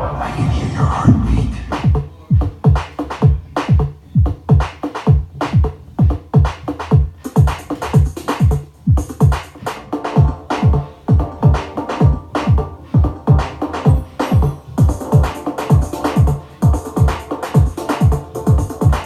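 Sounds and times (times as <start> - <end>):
hissing sound effect: 0.0 - 1.9
electronic dance music: 0.0 - 2.5, 6.4 - 19.0.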